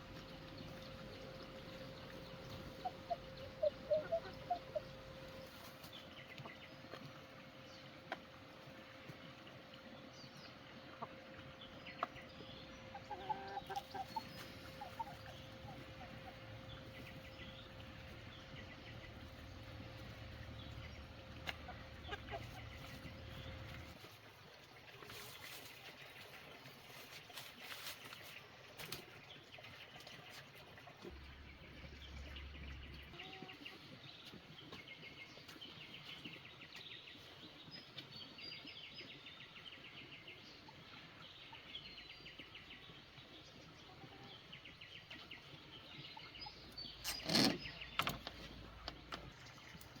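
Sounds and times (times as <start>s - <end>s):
chickens clucking: 0.0s - 24.0s, 43.2s - 50.0s.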